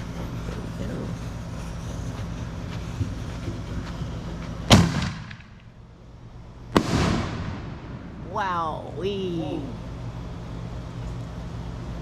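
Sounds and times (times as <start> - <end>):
steady low hum: 0.0 - 12.0
firework mortar bang: 4.7 - 5.6, 6.7 - 8.4
echoing rumble: 4.7 - 10.4.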